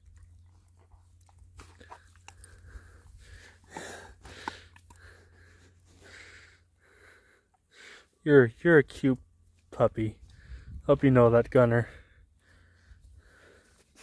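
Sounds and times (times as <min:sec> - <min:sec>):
puppy chewing wood: 0:00.0 - 0:03.4.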